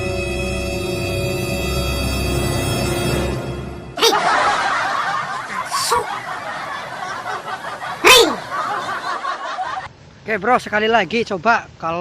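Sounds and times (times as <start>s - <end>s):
group of people laughing: 4.0s - 9.9s.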